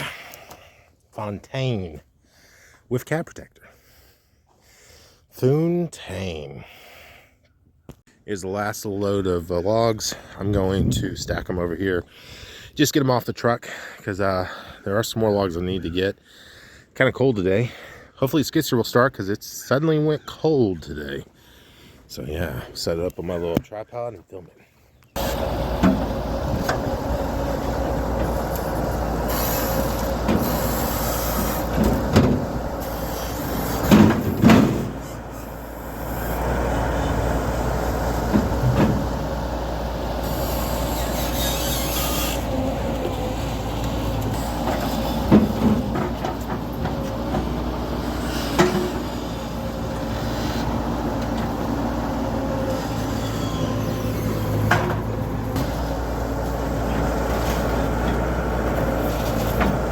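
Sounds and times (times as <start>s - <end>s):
engine running: 25.2s - 59.9s
logs thudding: 33.8s - 35.2s.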